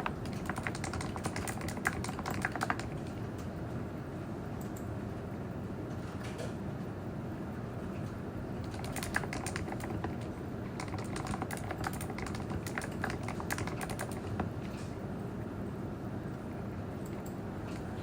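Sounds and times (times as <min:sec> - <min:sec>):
keyboard typing: 0:00.0 - 0:03.5, 0:08.6 - 0:14.8.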